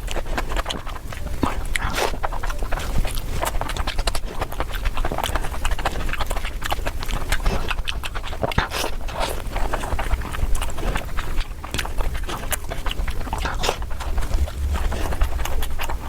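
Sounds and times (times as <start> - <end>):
chewing and lip-smacking: 0.0 - 16.0.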